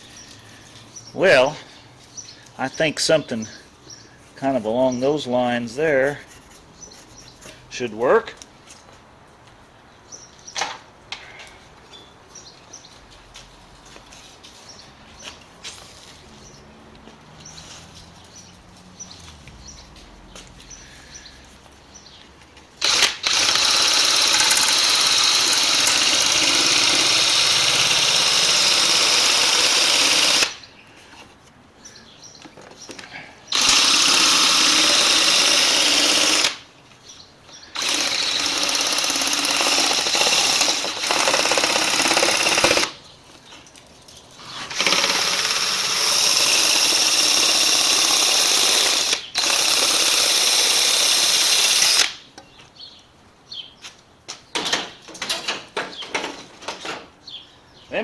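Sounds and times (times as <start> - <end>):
power tool cutting sheet metal: 22.8 - 30.6, 33.5 - 36.6, 37.8 - 43.0, 44.4 - 52.2.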